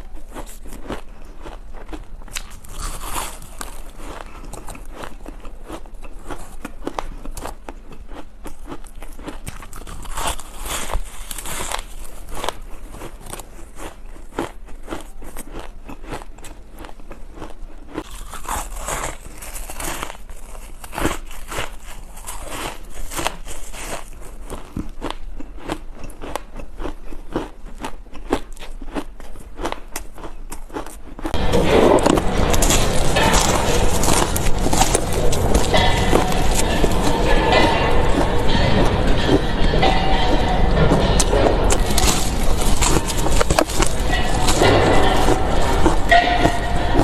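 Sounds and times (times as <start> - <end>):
chewing ice chunks: 0.0 - 40.0, 41.0 - 47.0.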